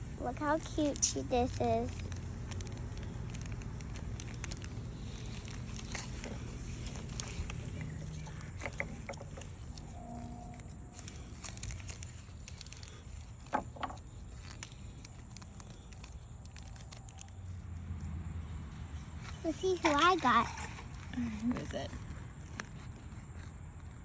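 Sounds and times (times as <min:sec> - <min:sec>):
low background rumble: 0:00.0 - 0:24.0
sharp plastic clicks: 0:00.4 - 0:06.4, 0:11.5 - 0:17.4
plastic packaging rustling: 0:00.4 - 0:17.5.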